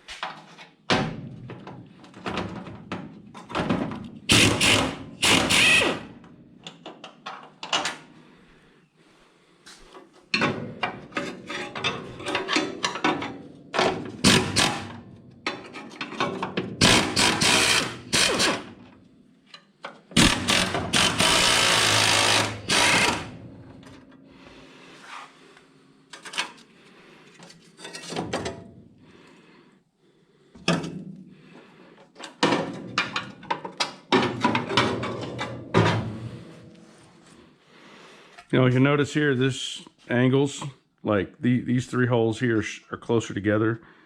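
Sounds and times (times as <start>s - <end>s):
pneumatic air tool bursts: 4.3s - 6.1s, 14.2s - 14.9s, 16.8s - 18.8s, 20.2s - 23.4s
metal tools clicking and knocking: 10.3s - 18.6s.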